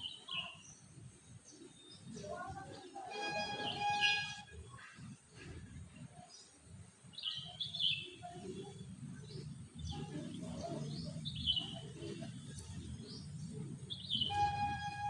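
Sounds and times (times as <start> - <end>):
birds chirping: 7.1 - 15.0.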